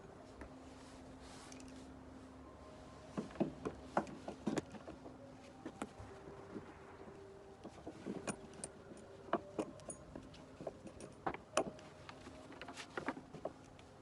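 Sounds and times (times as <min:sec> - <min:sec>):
bridle buckles clinking and jingling: 0:07.6 - 0:13.8.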